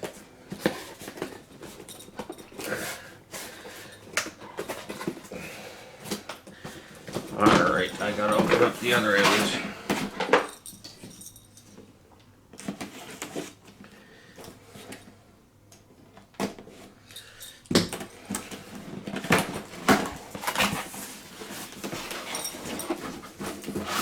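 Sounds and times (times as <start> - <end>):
taps scrapes and rustles: 6.0 - 11.1, 17.8 - 24.0.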